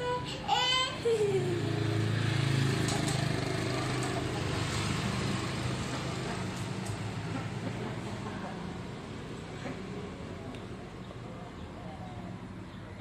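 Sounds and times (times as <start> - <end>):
small engine running: 1.2 - 9.6.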